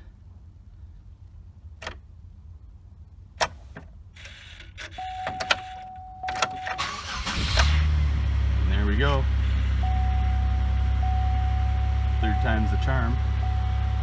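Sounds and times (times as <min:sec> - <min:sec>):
car starter cranking: 0:04.2 - 0:14.0
key and ignition clicks: 0:04.8 - 0:07.8
car engine running: 0:06.8 - 0:14.0
steady electronic tone: 0:09.4 - 0:14.0.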